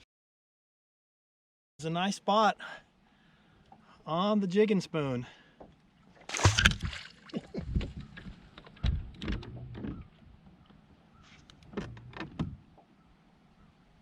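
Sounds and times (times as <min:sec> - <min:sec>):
knocks and clatter in boat: 0:06.5 - 0:10.8, 0:11.6 - 0:13.0.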